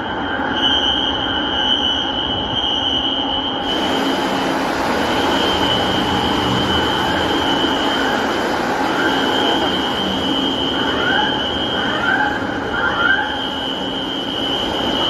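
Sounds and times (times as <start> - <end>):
fire alarm tone: 0.4 - 15.0
steady rushing noise: 3.6 - 15.0.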